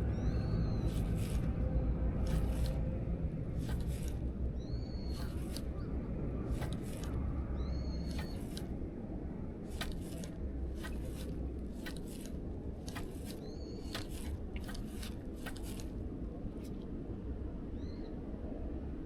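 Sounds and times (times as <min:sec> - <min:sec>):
small bird chirping: 0:00.0 - 0:02.8, 0:03.6 - 0:08.7, 0:12.9 - 0:15.8
wind rumble on microphone: 0:00.0 - 0:19.0
sharp clicks: 0:05.0 - 0:05.7, 0:06.5 - 0:07.2, 0:07.9 - 0:08.7, 0:09.7 - 0:15.9.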